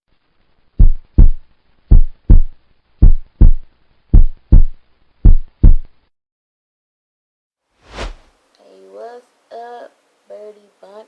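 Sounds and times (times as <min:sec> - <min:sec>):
heartbeat thumps: 0:00.8 - 0:05.9.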